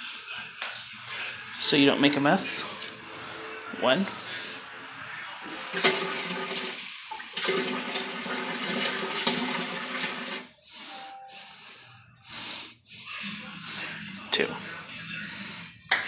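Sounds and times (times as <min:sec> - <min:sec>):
tap running water into cup: 0:05.6 - 0:10.4.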